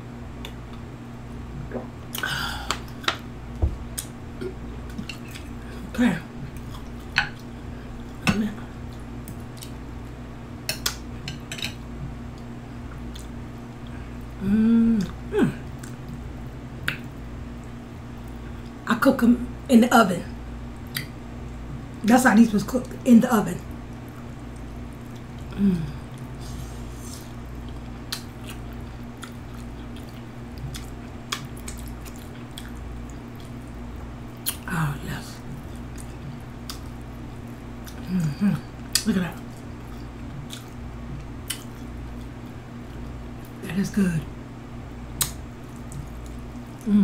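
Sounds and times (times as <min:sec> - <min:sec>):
low steady hum: 0:00.0 - 0:47.0
person humming mmm: 0:13.9 - 0:16.0, 0:25.5 - 0:27.2, 0:37.9 - 0:39.1, 0:46.7 - 0:47.0
mouth chewing wet smacks: 0:27.6 - 0:34.6, 0:35.5 - 0:38.1, 0:38.8 - 0:42.3, 0:45.2 - 0:46.8.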